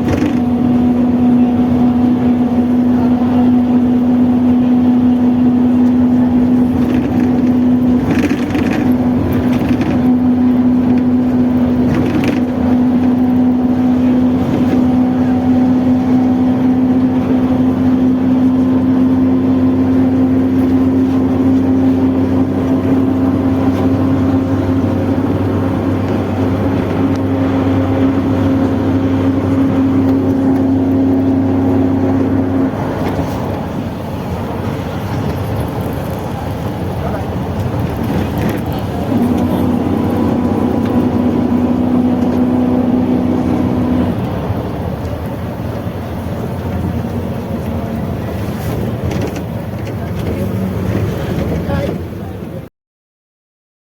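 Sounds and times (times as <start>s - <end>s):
driveshaft growling drone: 0.0s - 49.0s
diesel bus engine running: 0.0s - 52.7s.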